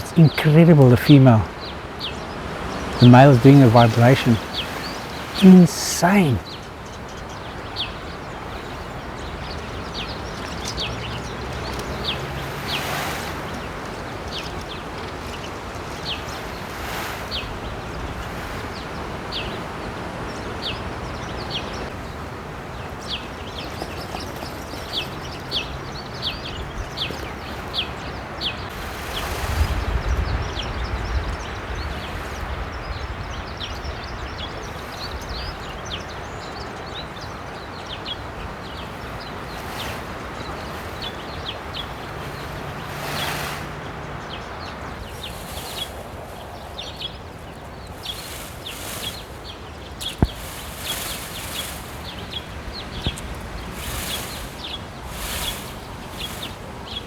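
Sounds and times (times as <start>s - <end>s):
small birds chirping: 0.0s - 57.0s
steady outdoor hiss: 0.0s - 57.0s
rustling bursts: 38.3s - 44.2s, 47.9s - 57.0s.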